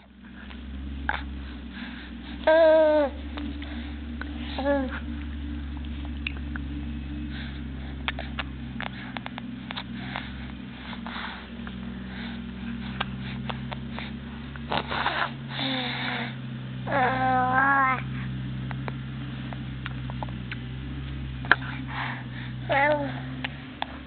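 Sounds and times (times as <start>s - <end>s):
low hum: 0.0s - 24.0s
breathy sniff: 7.1s - 16.4s, 21.5s - 24.0s.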